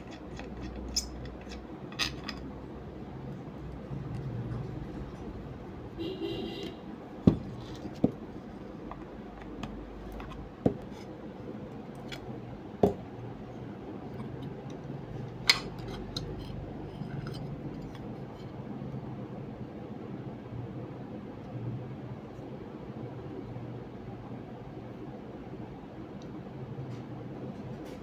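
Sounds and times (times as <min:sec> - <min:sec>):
steady low hum: 0:00.0 - 0:27.8
metal tools knocking and clinking: 0:14.1 - 0:18.1.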